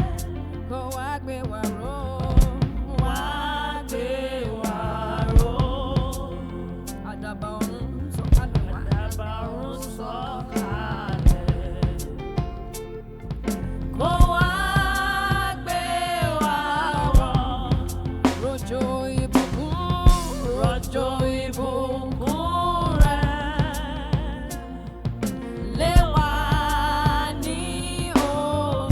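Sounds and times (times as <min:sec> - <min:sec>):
person singing: 0:00.0 - 0:28.9
band with drum kit playing: 0:10.5 - 0:28.9.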